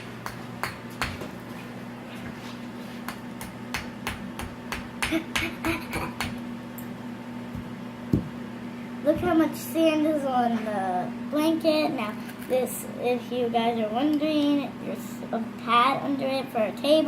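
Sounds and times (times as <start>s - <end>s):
low steady hum: 0.0s - 17.0s
small hammer tapping: 3.1s - 6.4s.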